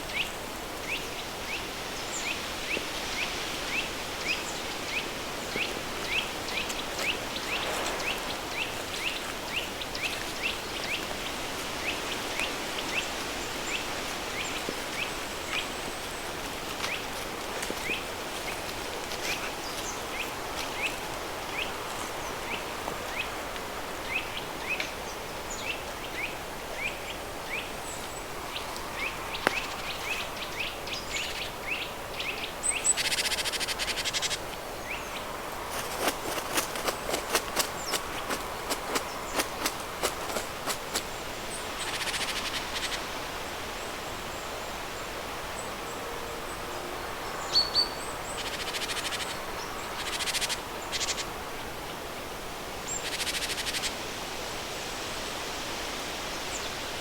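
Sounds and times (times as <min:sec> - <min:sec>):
river stream rushing: 0:00.0 - 0:24.4
pink noise: 0:00.9 - 0:16.4.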